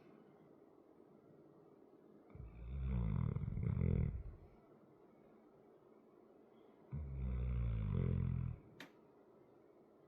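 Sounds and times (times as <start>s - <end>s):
large dog snoring: 2.4s - 4.4s, 7.0s - 8.6s.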